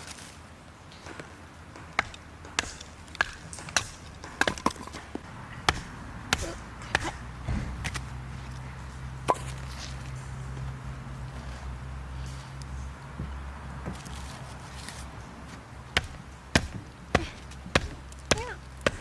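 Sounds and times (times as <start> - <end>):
steady low hum: 1.4 - 19.0.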